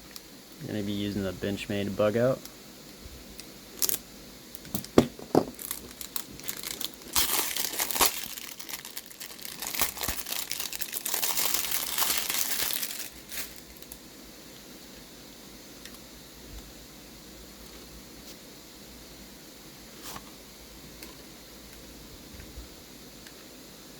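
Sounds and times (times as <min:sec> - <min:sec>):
wrapping crinkling and tearing: 0:03.8 - 0:04.0, 0:04.6 - 0:14.0.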